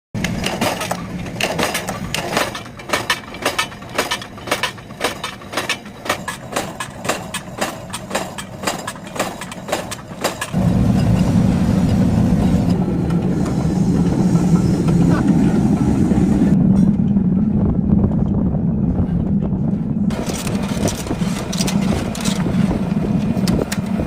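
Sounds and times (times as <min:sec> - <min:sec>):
forging machine metallic blows: 0:00.2 - 0:17.2
steady low machine noise: 0:00.2 - 0:24.0.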